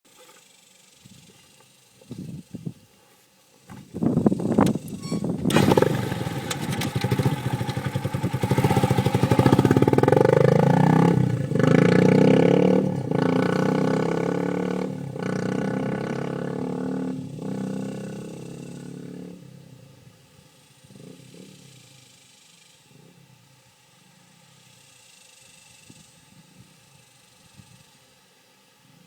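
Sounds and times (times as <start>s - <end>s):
motorcycle engine revving: 4.3s - 20.0s.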